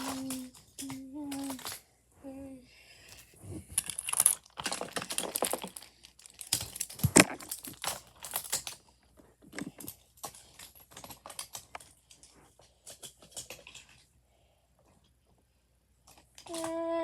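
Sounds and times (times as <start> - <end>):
wooden toy trains clattering: 0.0 - 1.9, 3.1 - 14.1, 16.1 - 17.0
person humming: 0.0 - 2.7, 16.5 - 17.0.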